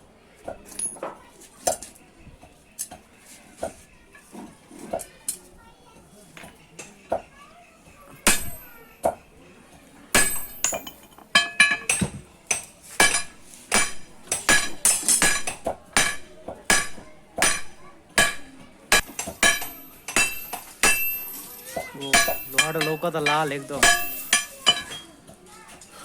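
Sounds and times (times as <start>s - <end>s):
hammer striking metal on anvil: 8.2s - 9.2s, 10.1s - 25.1s.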